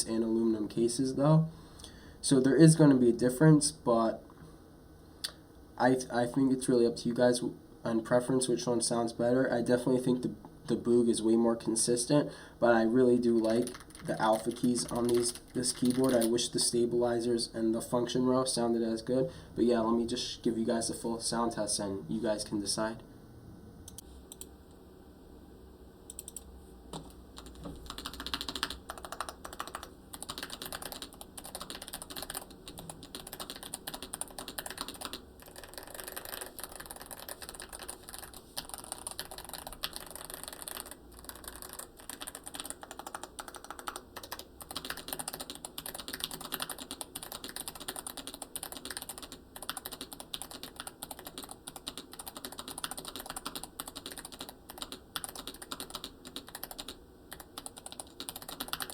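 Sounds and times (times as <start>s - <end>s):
mechanical keyboard typing: 13.4s - 16.4s, 27.0s - 58.9s.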